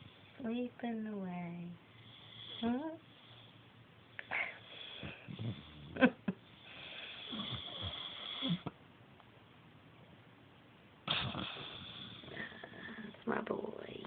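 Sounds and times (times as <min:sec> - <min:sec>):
pet snoring and snuffling: 0:04.7 - 0:06.1, 0:06.7 - 0:08.7, 0:11.1 - 0:12.9.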